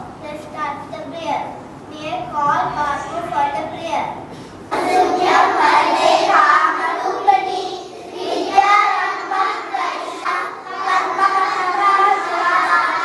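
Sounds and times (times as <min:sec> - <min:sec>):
children singing in unison: 0:04.7 - 0:13.0.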